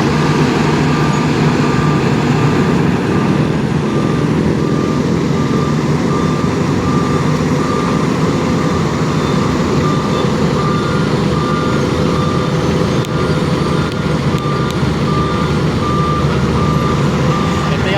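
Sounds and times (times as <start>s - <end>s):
diesel engine running: 0.0s - 17.9s
reversing alarm beeps: 0.0s - 17.9s.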